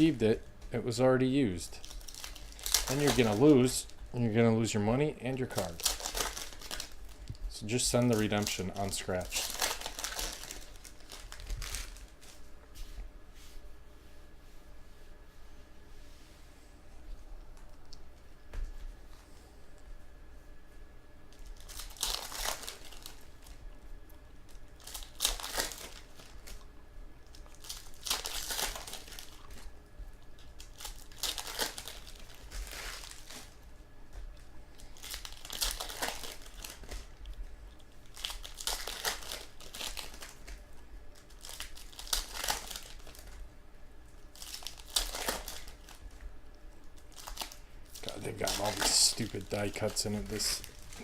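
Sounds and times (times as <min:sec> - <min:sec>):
foil wrappers crinkling and tearing: 0:00.0 - 0:12.4, 0:21.3 - 0:23.6, 0:24.4 - 0:33.6, 0:34.3 - 0:43.4, 0:44.1 - 0:46.2, 0:46.8 - 0:51.0.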